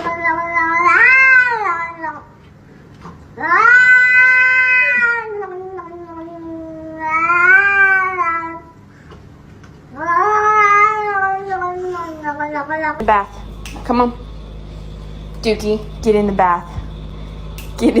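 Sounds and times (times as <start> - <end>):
cat yowling: 0.0 - 2.2, 3.4 - 8.7, 9.9 - 11.8.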